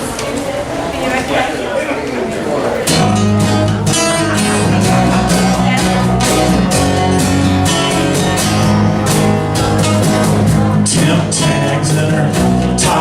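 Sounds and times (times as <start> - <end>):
country band playing: 2.6 - 13.0
guitar: 2.6 - 13.0.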